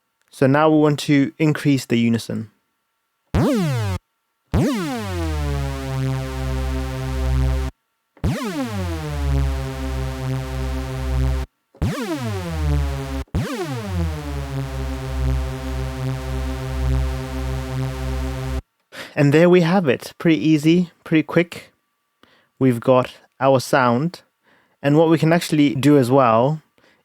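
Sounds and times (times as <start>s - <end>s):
swooping detuned synth notes: 3.4s - 18.6s.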